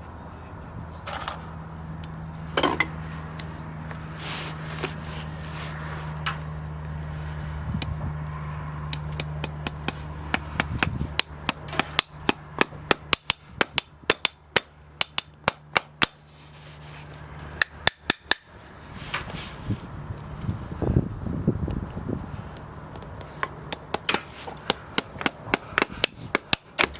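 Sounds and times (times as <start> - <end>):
hammer striking sharp taps: 8.9 - 16.2, 23.4 - 26.9.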